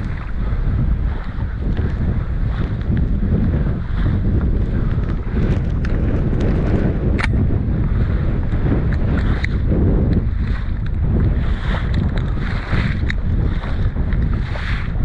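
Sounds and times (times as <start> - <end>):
wind buffeting microphone: 0.0 - 15.0
sharp click: 7.1 - 7.4.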